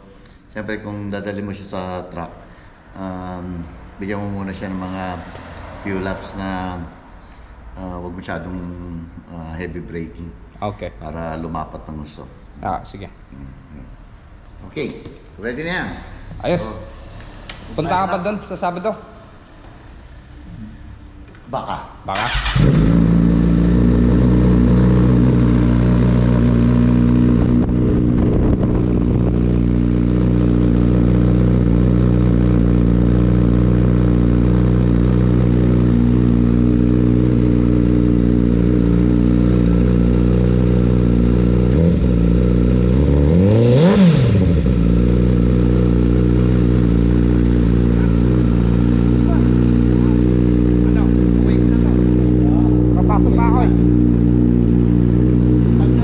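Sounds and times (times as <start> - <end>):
engine revving: 4.0 - 7.1, 22.2 - 56.0
motorcycle engine idling: 44.7 - 56.0.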